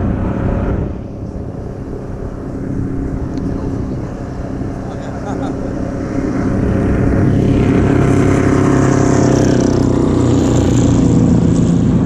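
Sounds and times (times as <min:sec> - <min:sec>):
racing car engines passing: 0:00.0 - 0:12.0.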